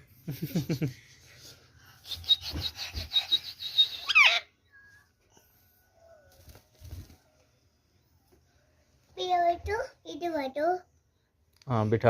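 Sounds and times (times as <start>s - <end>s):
parakeet shrill chattering: 4.0s - 4.5s
parakeet squawk: 4.0s - 4.5s.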